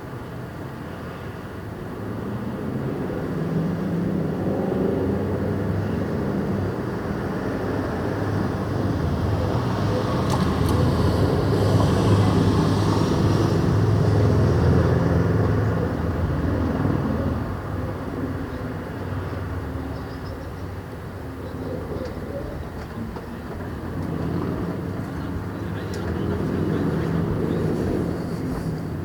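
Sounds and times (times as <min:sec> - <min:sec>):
motor vehicle passing: 0:21.6 - 0:29.0.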